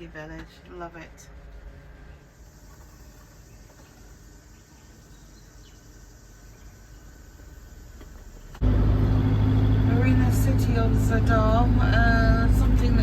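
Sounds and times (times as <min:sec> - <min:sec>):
insect chirring: 0:02.4 - 0:07.9
loud low vehicle hum: 0:06.6 - 0:13.0.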